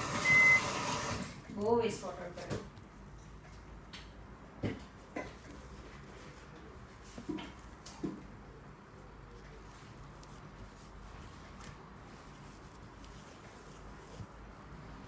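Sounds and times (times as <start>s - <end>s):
slime squishing by hand: 4.8s - 15.0s.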